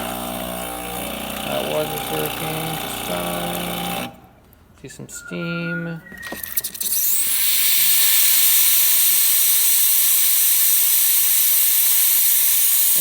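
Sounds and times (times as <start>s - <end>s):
steam wand hissing: 6.8s - 13.0s.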